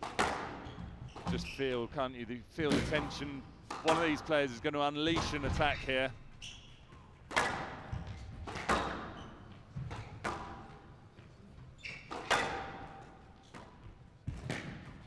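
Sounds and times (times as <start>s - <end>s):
squash ball striking rackets and walls: 0.0s - 1.5s, 2.7s - 4.2s, 5.1s - 15.0s
shoe squeak: 0.6s - 1.8s, 5.5s - 10.3s, 11.5s - 12.7s.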